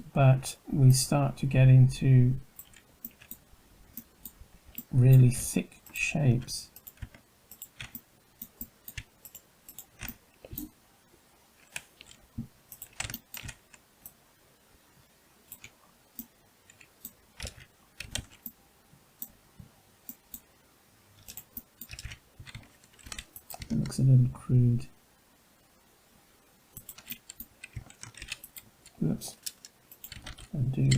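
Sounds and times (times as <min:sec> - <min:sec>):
computer keyboard keys clicking: 0:02.6 - 0:03.4, 0:06.8 - 0:10.7, 0:11.6 - 0:12.2, 0:12.8 - 0:13.8, 0:16.7 - 0:18.6, 0:21.2 - 0:24.0, 0:26.8 - 0:30.9.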